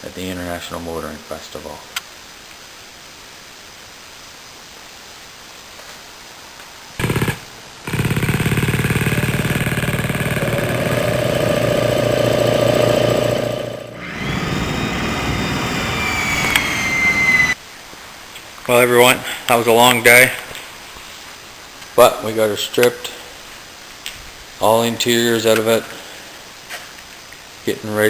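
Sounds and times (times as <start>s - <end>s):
power tool hammering rattle: 7.0s - 16.8s
high whine: 7.0s - 17.6s.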